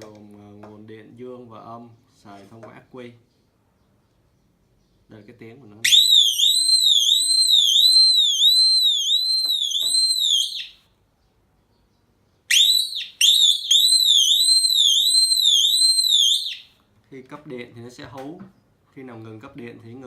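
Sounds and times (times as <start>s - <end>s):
electronic alarm siren warbling: 5.9s - 10.8s, 12.5s - 16.7s.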